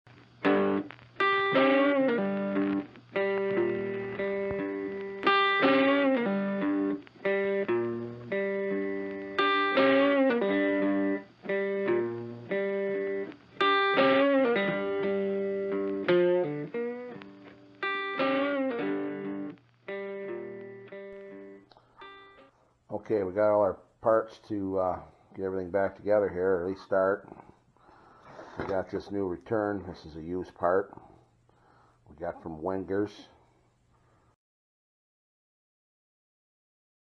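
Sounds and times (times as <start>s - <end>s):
guitar riff of plucked notes: 0.4s - 22.5s.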